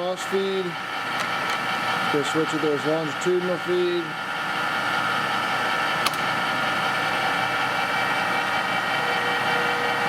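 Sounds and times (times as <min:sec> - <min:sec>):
lathe gear whine: 0:00.0 - 0:10.0
sharp click: 0:06.0 - 0:06.3.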